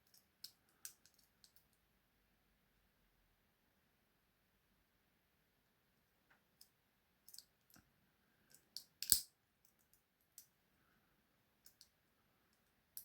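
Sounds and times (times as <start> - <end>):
lock picks clicking and scraping: 8.5 - 10.5.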